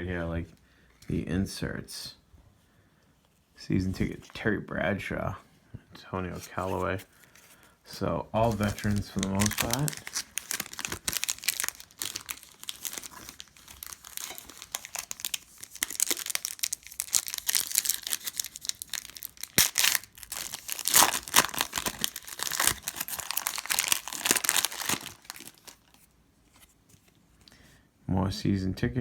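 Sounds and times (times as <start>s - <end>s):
plastic wrapper tearing and crinkling: 8.4s - 27.2s.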